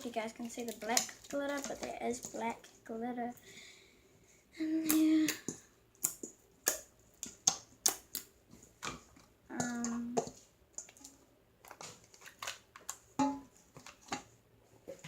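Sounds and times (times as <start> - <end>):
slime clicking and popping: 4.8 - 8.3.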